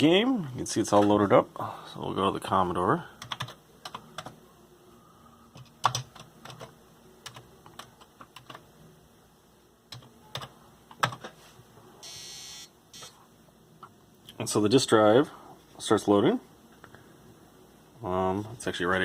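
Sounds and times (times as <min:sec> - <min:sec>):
steady electronic buzz: 0:12.0 - 0:13.2.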